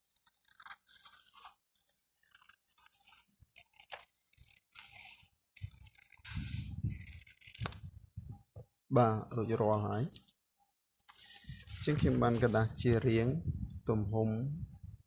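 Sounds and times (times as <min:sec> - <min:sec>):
scissors cutting paper: 0:00.1 - 0:07.9.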